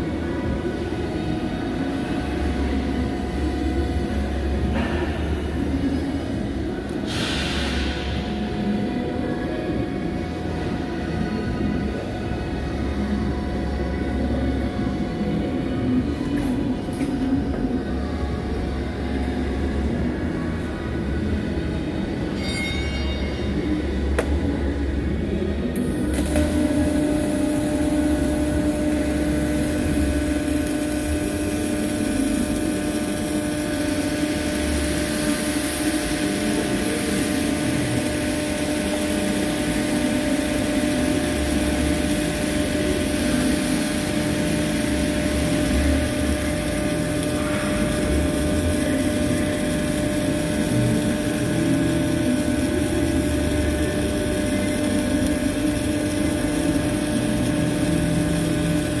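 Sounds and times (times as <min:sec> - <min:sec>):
welding arc hissing: 0:00.0 - 0:09.2, 0:24.0 - 0:59.0
welding machine hum: 0:00.0 - 0:59.0.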